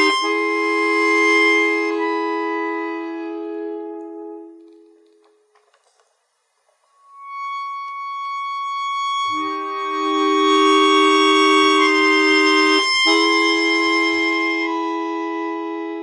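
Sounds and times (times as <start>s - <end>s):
reedy sustained chords: 7.0s - 16.0s.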